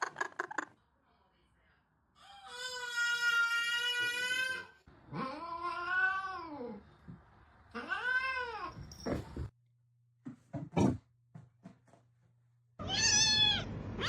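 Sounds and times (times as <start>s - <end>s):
cat meowing: 12.8s - 14.0s.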